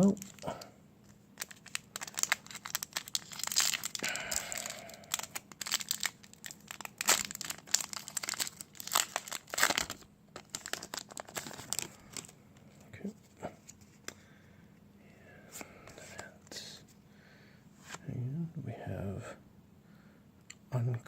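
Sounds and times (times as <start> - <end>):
wrapper tearing and crinkling: 0.0 - 0.6, 1.4 - 12.4.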